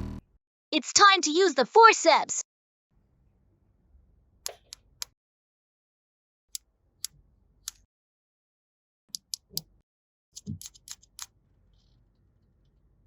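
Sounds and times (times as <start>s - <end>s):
plastic toy pieces clicking: 10.4s - 11.3s.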